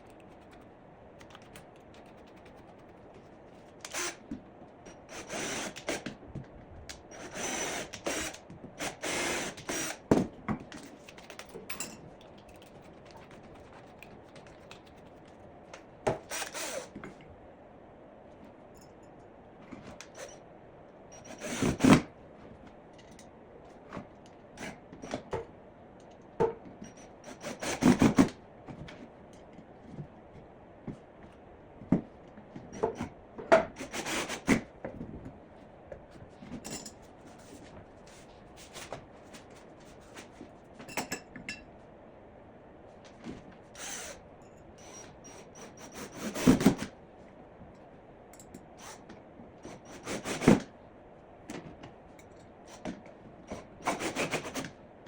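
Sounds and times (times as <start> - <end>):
drill driving screws into wood: 3.9 - 4.2, 5.1 - 6.0, 7.2 - 10.1, 16.2 - 16.9, 21.3 - 22.0, 27.3 - 28.3, 33.8 - 34.6, 43.8 - 44.2, 44.8 - 46.8, 49.7 - 50.6, 53.5 - 54.6.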